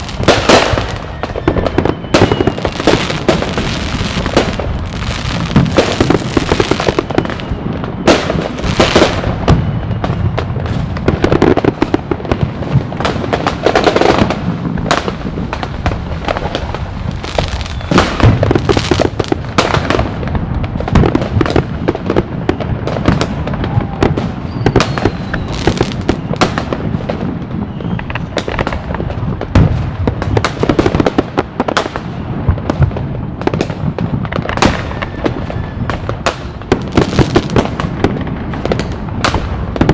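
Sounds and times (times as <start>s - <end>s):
whistling rockets: 0.0s - 12.0s, 16.3s - 31.0s, 34.3s - 39.9s
fireworks bangs and crackles: 0.0s - 39.9s.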